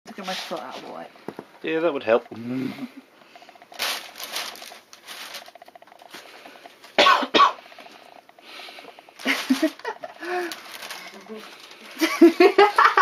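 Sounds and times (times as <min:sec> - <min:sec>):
bag rustling and crinkling: 0:00.1 - 0:01.5, 0:03.3 - 0:07.0, 0:07.6 - 0:12.4
cough-like sounds: 0:07.0 - 0:07.6.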